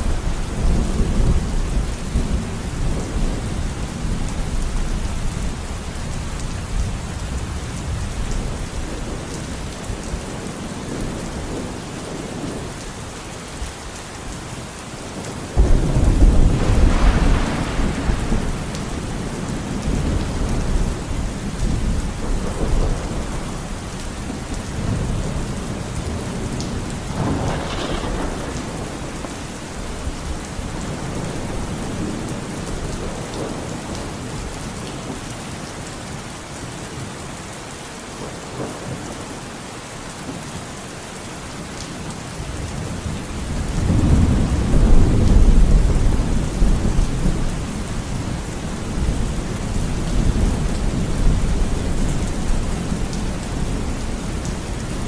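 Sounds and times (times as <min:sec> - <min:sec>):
steady rain: 0:00.0 - 0:55.0
loud thunderclap: 0:15.6 - 0:23.6, 0:26.1 - 0:32.3, 0:43.5 - 0:47.5
rolling thunder: 0:15.6 - 0:34.5, 0:42.6 - 0:55.0.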